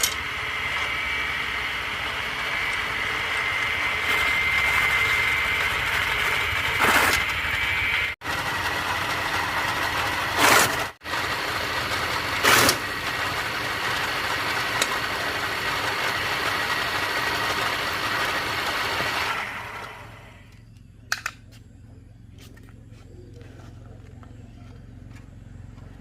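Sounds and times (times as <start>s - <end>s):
feed processing machine running: 0.0s - 20.6s.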